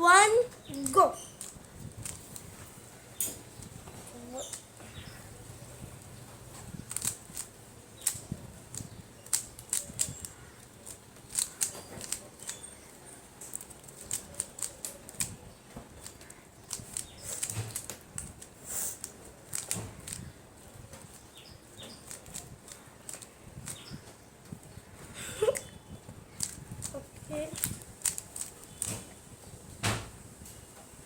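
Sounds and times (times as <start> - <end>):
puzzle cube plastic clicking: 0.7 - 2.5, 6.8 - 12.8, 13.4 - 20.3, 21.8 - 24.0, 25.5 - 29.2.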